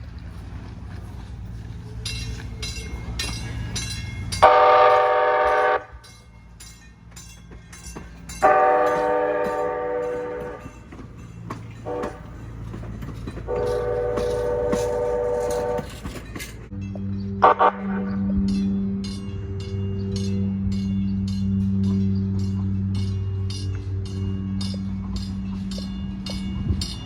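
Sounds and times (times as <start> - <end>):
light-rail car horn blasts: 4.4 - 6.1, 8.4 - 10.8, 11.8 - 12.6, 13.4 - 16.2, 17.3 - 25.4.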